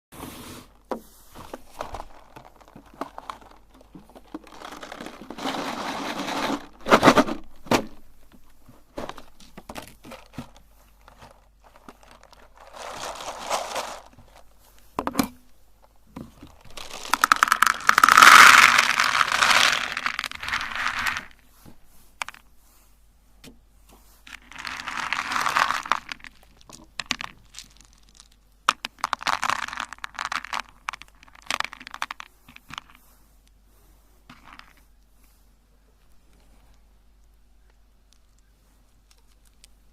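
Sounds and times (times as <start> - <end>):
candy crunching in a grinder: 1.7 - 7.2, 11.1 - 14.2, 16.5 - 21.4, 24.3 - 32.3.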